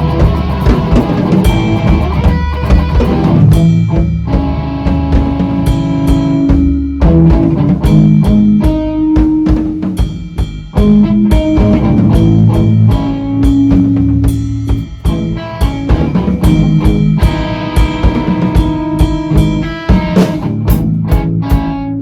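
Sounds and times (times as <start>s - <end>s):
rock band playing instrumental: 0.0s - 22.0s.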